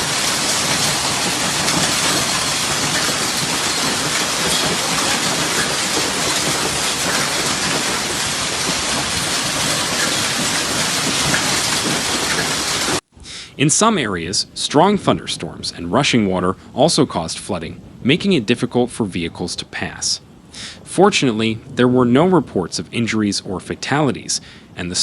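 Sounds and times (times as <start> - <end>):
drops ticking on surfaces: 0.0 - 13.0
heavy rain hissing: 0.0 - 25.0.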